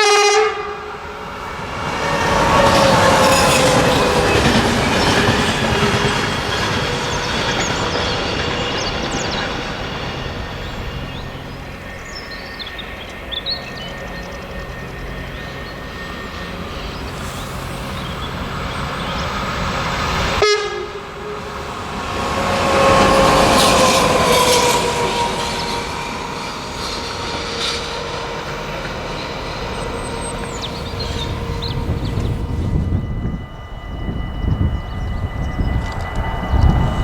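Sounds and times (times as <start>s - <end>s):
train horn: 0.0s - 7.2s, 15.0s - 36.8s
train running on track: 0.0s - 37.0s
train wheels rumbling: 0.0s - 37.0s.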